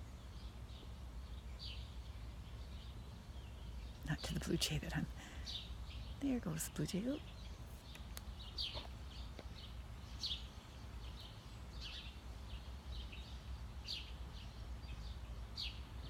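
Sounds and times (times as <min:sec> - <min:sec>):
bird chirping: 0:00.0 - 0:16.0.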